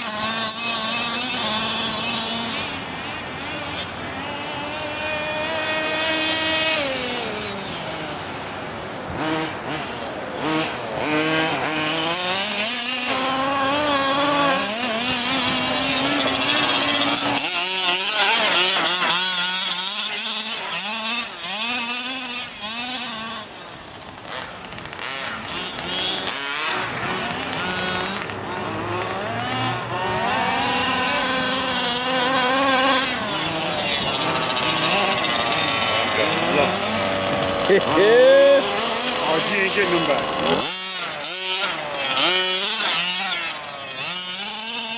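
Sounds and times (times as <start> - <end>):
small two-stroke engine revving: 0.0 - 44.9.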